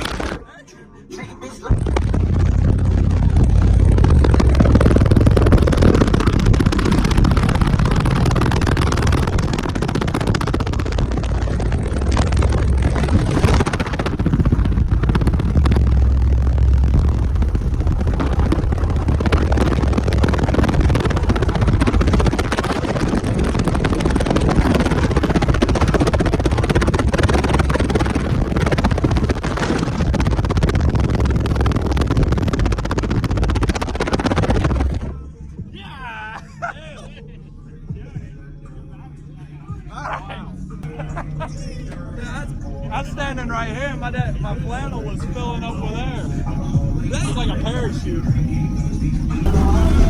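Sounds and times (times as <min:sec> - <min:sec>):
deep subwoofer bass: 0:00.0 - 0:50.0
rushing air noise: 0:01.7 - 0:35.2.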